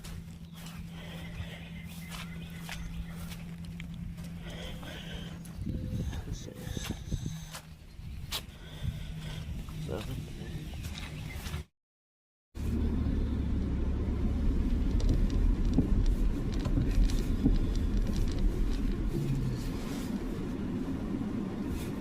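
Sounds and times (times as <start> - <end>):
car road and engine rumble: 0.0 - 11.7, 12.6 - 22.0.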